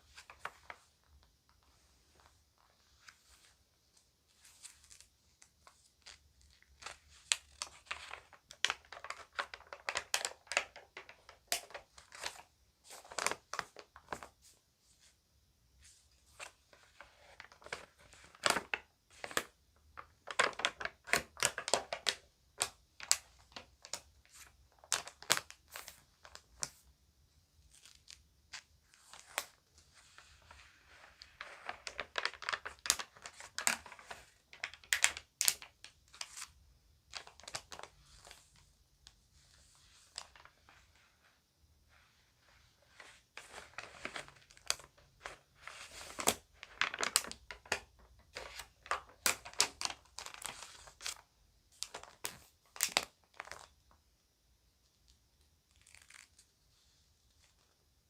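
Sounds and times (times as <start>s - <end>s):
magazine pages crinkling: 0.0s - 14.6s, 27.6s - 38.7s, 39.4s - 41.0s, 42.6s - 51.2s, 51.8s - 53.7s, 55.7s - 56.5s.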